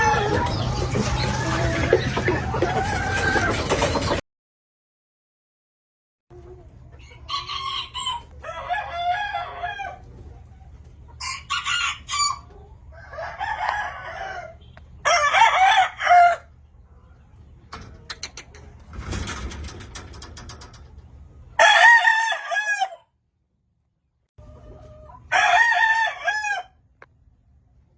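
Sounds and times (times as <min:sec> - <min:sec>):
rooster clucking: 0:00.0 - 0:04.2, 0:06.3 - 0:17.1, 0:17.9 - 0:18.9
roosters crowing: 0:00.0 - 0:04.2, 0:07.0 - 0:10.3, 0:11.1 - 0:16.6, 0:21.5 - 0:23.1, 0:24.4 - 0:26.9.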